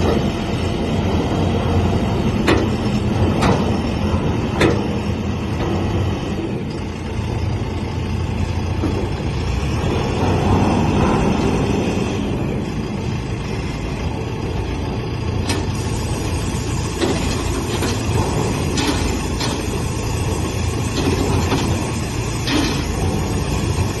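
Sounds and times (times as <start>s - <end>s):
truck engine rumbling: 0.0s - 24.0s
sharp clanks or hisses: 15.5s - 23.0s.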